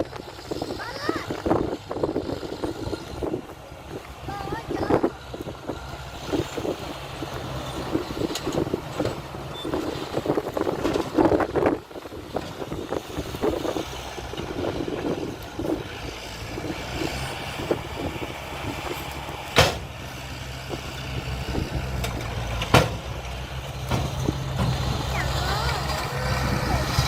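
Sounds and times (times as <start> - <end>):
diesel construction machinery running: 0.0 - 27.0
knocks and rattles: 20.7 - 27.0.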